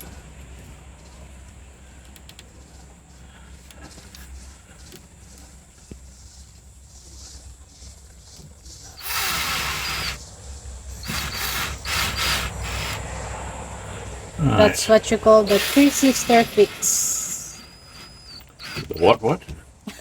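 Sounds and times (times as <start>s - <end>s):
rasping scraping noise: 9.0s - 14.4s.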